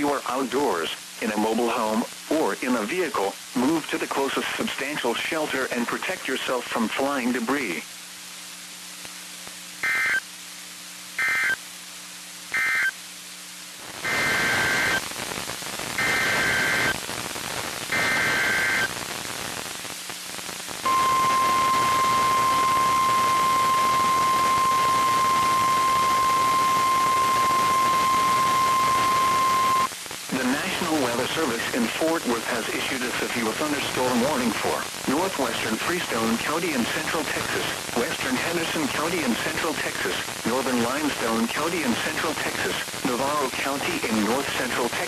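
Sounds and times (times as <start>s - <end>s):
radio static: 0.0s - 7.9s, 13.8s - 45.0s
warbling data tones: 17.9s - 18.9s, 20.8s - 29.9s.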